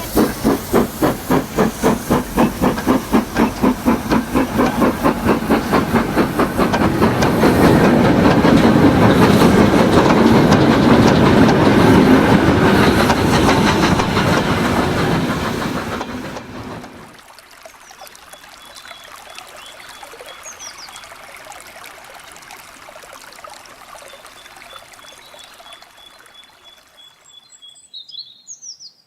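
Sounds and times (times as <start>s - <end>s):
steam locomotive chuffing: 0.0s - 17.2s.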